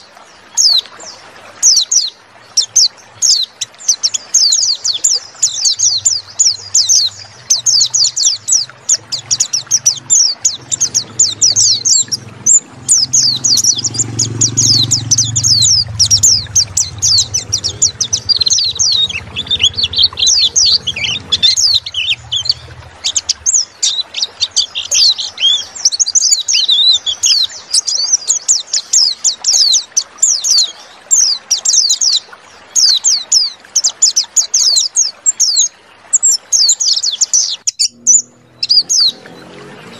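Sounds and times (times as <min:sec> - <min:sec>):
bird twittering song: 0:00.0 - 0:39.9
faint low rumble: 0:06.0 - 0:24.0, 0:37.9 - 0:39.9.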